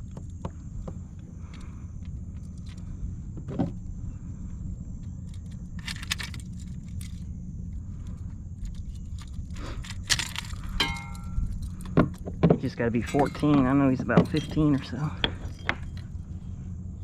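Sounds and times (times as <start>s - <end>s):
steady low rumble: 0.0s - 17.0s
fishing gear clicks and rattles: 5.1s - 7.3s, 8.1s - 16.3s.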